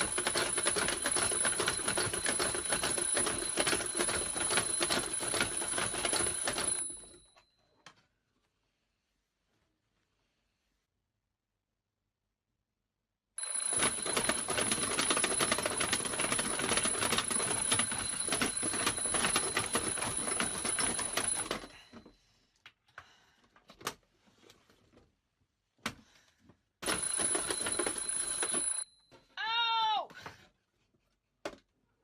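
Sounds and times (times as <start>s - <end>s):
alarm clock bell ringing: 0.0s - 7.4s, 13.4s - 21.8s, 26.8s - 29.1s.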